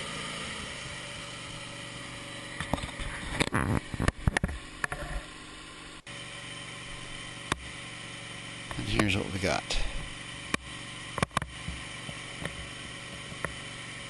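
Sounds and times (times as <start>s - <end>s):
band sawmill cutting log: 0.0s - 14.0s.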